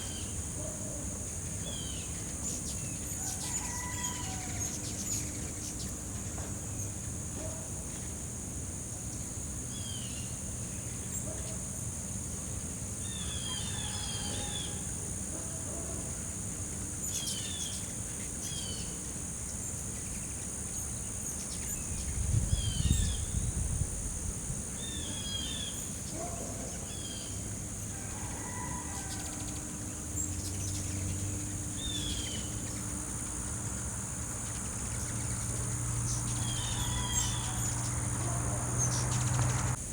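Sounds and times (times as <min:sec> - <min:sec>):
high-pitched insect chorus: 0:00.0 - 0:39.9
birds chirping: 0:28.4 - 0:39.8.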